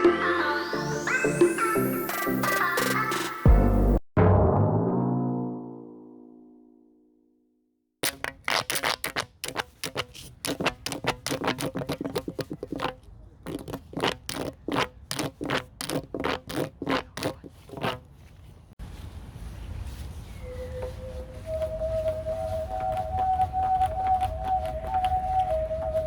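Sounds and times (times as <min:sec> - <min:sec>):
plastic tube clicking pops: 0:08.0 - 0:16.7.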